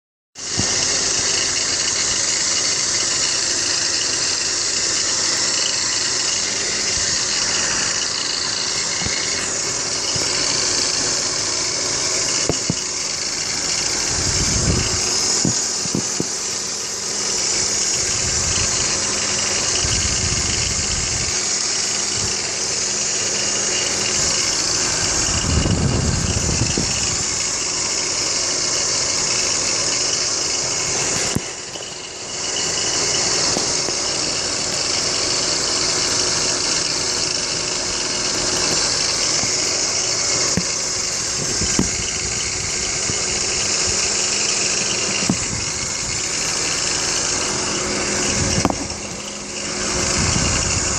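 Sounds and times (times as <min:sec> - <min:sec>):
car engine running: 0:00.4 - 0:50.9
high-pitched whirring noise: 0:04.0 - 0:50.9
low rumbles: 0:40.4 - 0:50.9.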